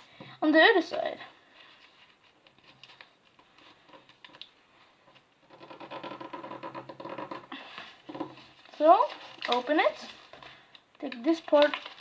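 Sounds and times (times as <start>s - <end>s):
paper crinkling and rustling: 1.5s - 4.6s, 7.8s - 12.0s.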